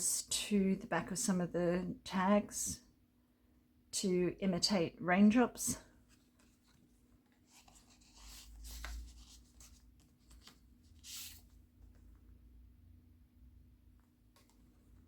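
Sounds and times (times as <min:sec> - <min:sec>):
paper pages rustling: 0:06.1 - 0:12.3.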